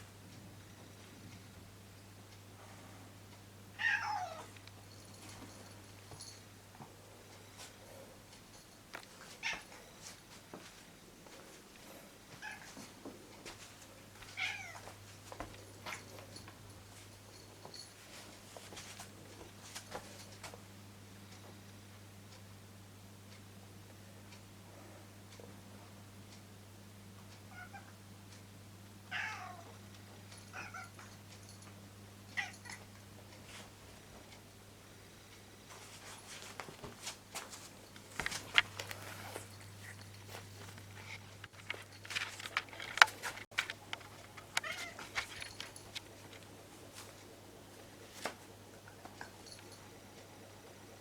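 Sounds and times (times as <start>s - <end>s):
cat meowing: 3.8s - 4.5s, 14.4s - 14.8s, 29.1s - 29.7s, 30.5s - 30.9s.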